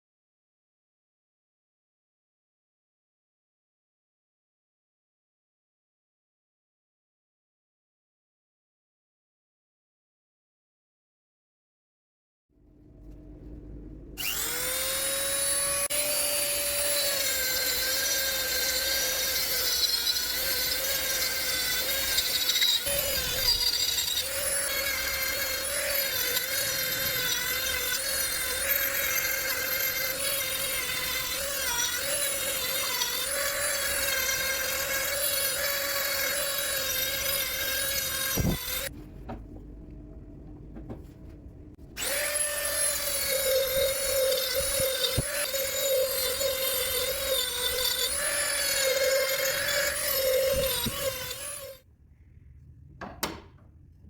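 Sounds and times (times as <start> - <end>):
power tool whining on wood: 14.2 - 38.9, 42.0 - 51.8.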